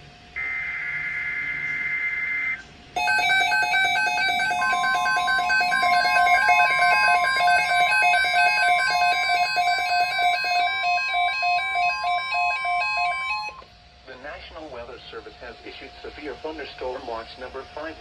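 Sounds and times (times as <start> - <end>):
fast buzzy electronic beeping: 0.4 - 13.6
steady warning alarm tone: 0.4 - 13.7.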